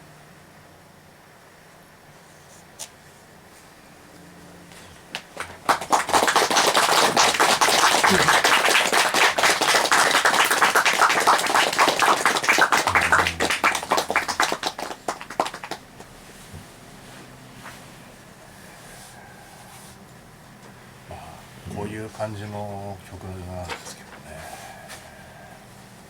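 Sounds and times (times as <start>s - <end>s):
audience applauding: 5.2s - 16.1s.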